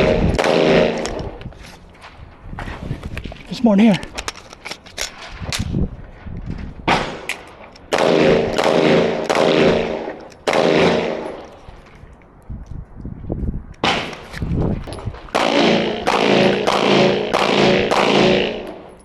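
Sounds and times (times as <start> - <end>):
gunshots: 0.0 - 1.4, 6.8 - 11.5, 13.8 - 14.2, 15.3 - 19.0.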